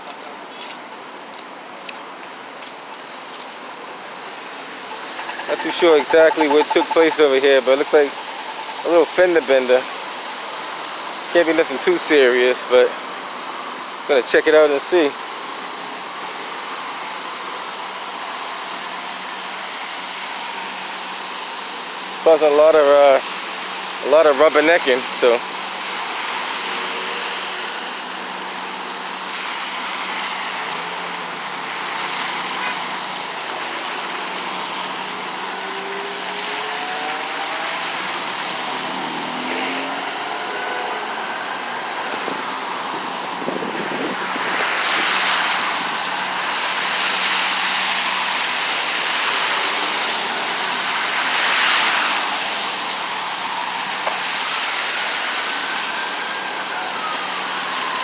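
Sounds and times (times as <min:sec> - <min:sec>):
road traffic passing: 0:00.0 - 0:58.0
loud vehicles passing: 0:02.9 - 0:14.0, 0:23.7 - 0:58.0.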